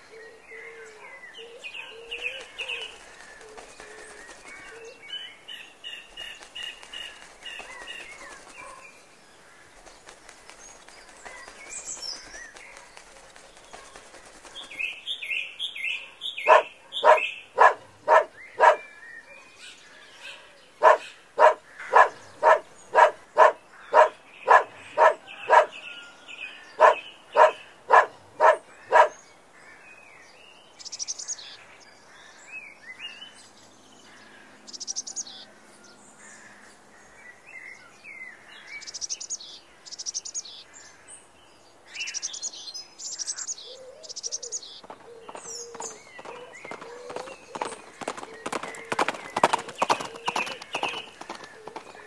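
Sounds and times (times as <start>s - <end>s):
faint small birds chirping: 0.0s - 29.4s
bird calling harshly: 44.8s - 52.0s.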